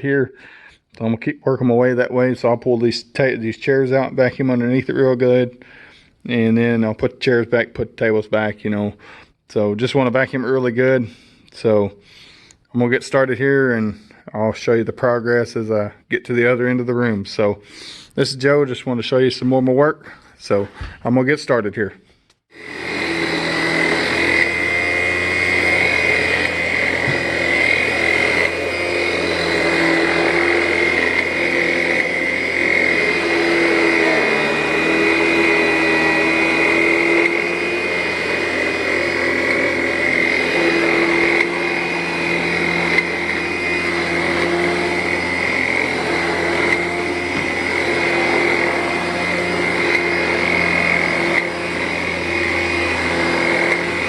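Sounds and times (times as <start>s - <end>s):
vacuum cleaner running: 1.8s - 6.9s, 22.5s - 54.0s.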